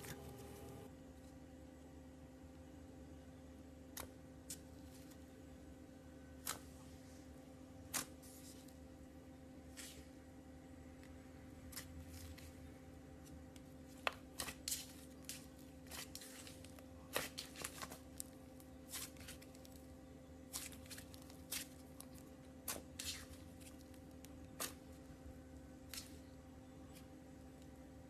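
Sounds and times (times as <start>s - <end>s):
faint steady hum: 0.0s - 28.0s
slime crackling and squishing: 13.2s - 26.3s.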